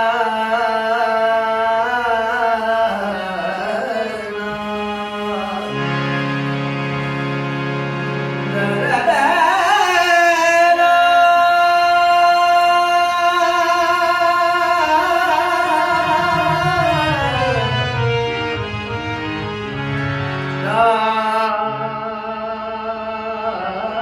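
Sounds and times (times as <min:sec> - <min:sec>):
held instrumental chord: 0:00.0 - 0:23.8
man singing high note: 0:11.0 - 0:18.0.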